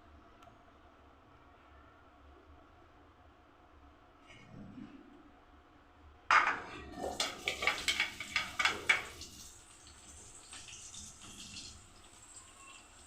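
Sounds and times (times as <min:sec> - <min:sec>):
oil sizzling: 0:06.3 - 0:13.0
metal spoon scraping frying pan: 0:06.5 - 0:09.6.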